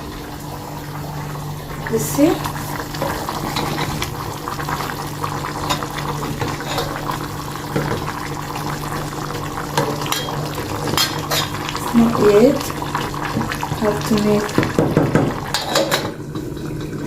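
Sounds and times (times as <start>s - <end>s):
stew bubbling in a pot: 0.0s - 17.0s.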